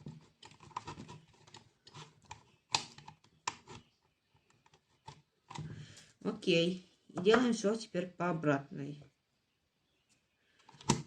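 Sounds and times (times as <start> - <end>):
small plastic parts clicking: 0.1 - 5.7.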